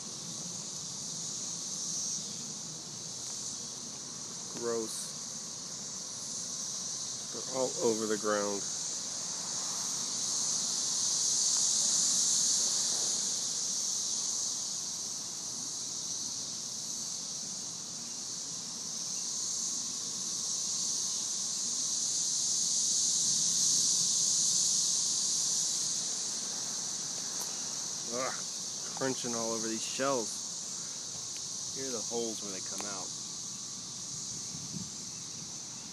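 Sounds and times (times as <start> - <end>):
cicadas chorus whining: 0.0 - 35.9.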